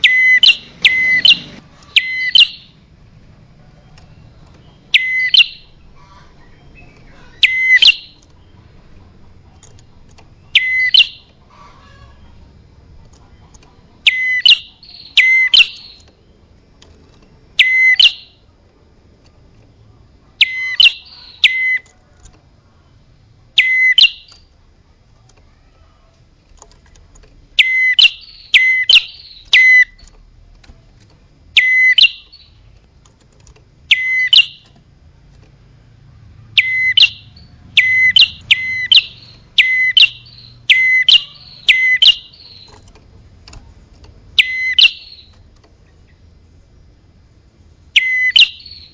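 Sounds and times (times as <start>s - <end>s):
bird calling sharp high notes: 0.0s - 2.8s, 4.9s - 5.8s, 7.3s - 8.2s, 10.5s - 12.0s, 14.0s - 16.1s, 17.6s - 18.4s, 23.6s - 24.4s, 27.6s - 30.1s, 31.6s - 32.6s, 33.9s - 34.7s, 36.5s - 42.8s, 44.4s - 45.4s, 48.0s - 48.9s.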